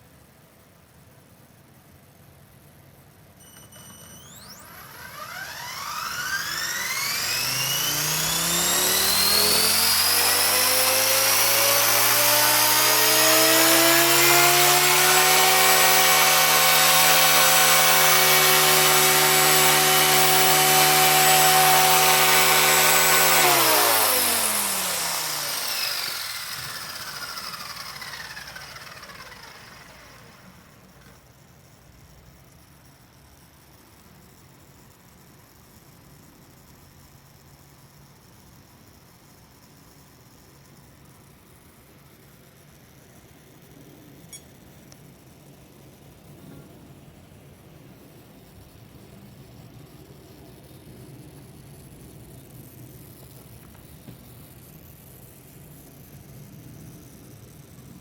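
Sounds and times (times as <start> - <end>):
electric motor whine: 3.6 - 31.2
helicopter rotor whirring: 3.6 - 31.2.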